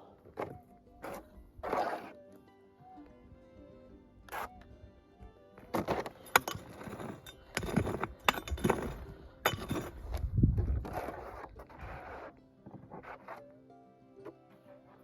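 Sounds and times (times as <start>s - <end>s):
stony ground being scraped: 0.3s - 2.2s, 4.3s - 4.7s, 5.6s - 13.5s
stones clinking and grating: 5.6s - 13.4s.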